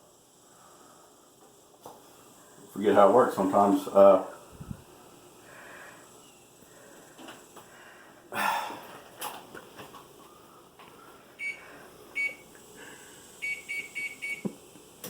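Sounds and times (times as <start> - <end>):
microwave keypad beeps: 11.4 - 11.6, 12.2 - 12.4, 13.4 - 14.5.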